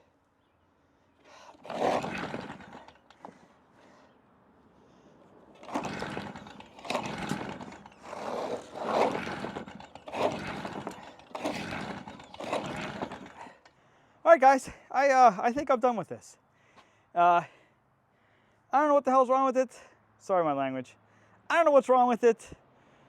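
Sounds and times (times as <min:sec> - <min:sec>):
engine cranking: 0:01.2 - 0:03.9, 0:05.5 - 0:13.7
recoil starter pulls: 0:01.2 - 0:04.0, 0:05.5 - 0:13.7.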